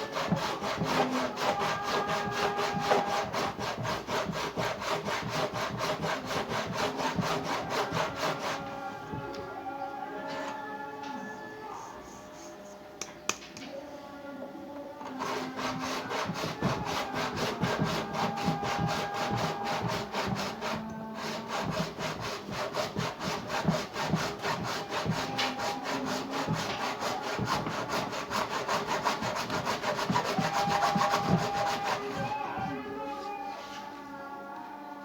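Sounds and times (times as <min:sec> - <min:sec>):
saw cutting through plastic: 0:00.0 - 0:08.8, 0:15.1 - 0:32.8.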